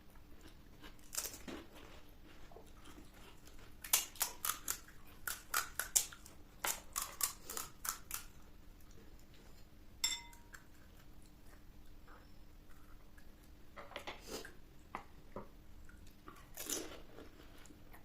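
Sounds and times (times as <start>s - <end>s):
crunchy shells being chewed: 0.2s - 9.3s, 15.8s - 18.0s.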